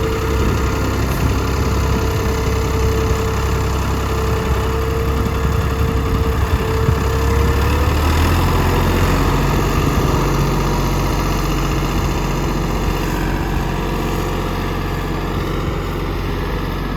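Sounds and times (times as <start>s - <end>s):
diesel engine running: 0.0s - 16.9s.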